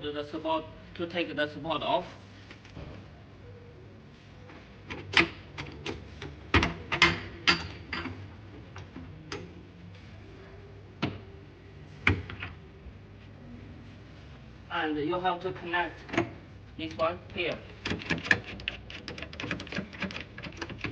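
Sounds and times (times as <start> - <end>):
clicks and knocks of hard parts: 4.9 - 9.5, 16.1 - 20.9.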